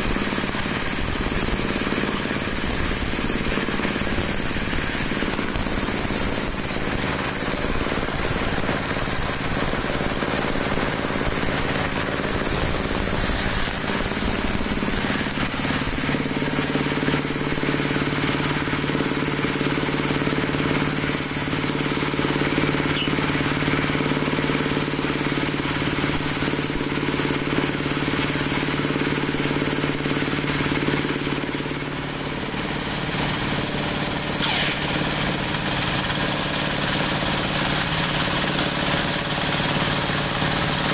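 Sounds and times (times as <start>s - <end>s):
dowel machine motor hum: 0.0s - 40.9s
high whine: 32.0s - 35.5s.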